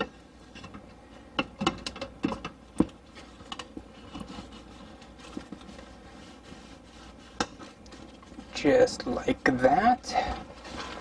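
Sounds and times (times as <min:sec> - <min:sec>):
parts knocking and clicking: 0:01.4 - 0:04.3.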